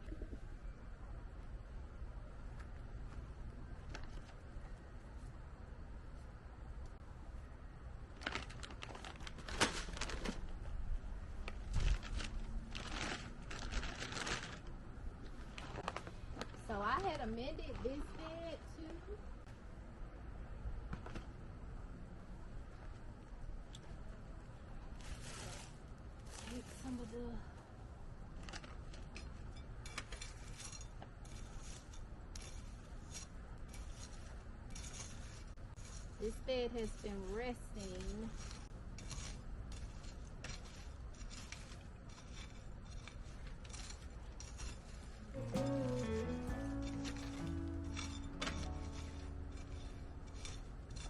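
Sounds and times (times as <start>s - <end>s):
scratchy rustling and crinkling: 8.1s - 10.8s, 11.4s - 18.7s, 24.9s - 27.2s, 28.4s - 51.0s.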